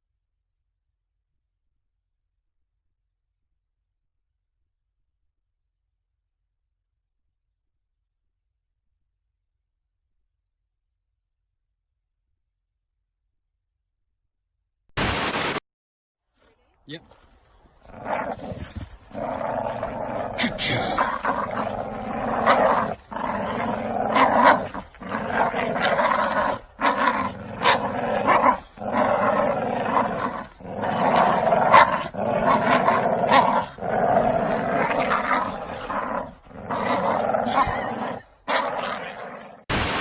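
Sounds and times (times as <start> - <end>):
dog growling: 17.8 - 39.7.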